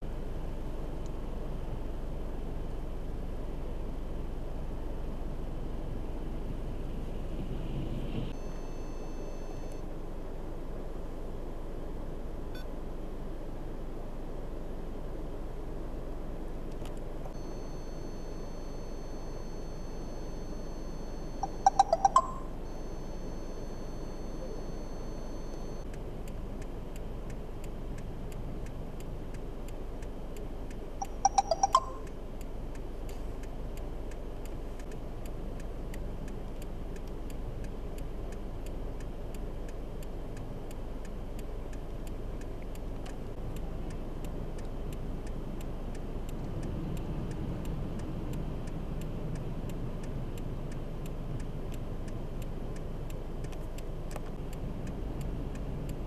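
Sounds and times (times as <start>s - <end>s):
vehicle rumble: 0.0s - 56.0s
loud electronic beeps: 17.4s - 25.9s, 31.0s - 32.1s
faint regular clicking: 24.6s - 56.0s.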